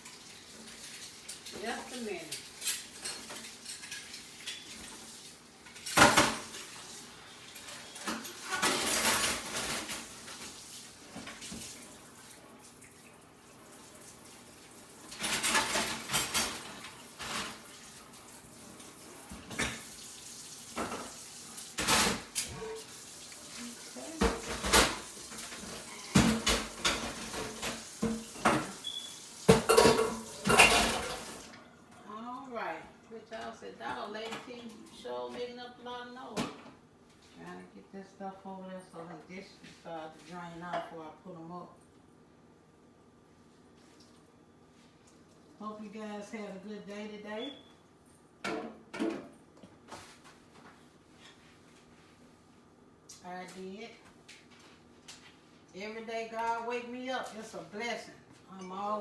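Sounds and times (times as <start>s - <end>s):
dishes and cutlery clattering: 0.2s - 5.0s, 5.6s - 10.4s, 15.1s - 17.7s, 24.1s - 31.5s.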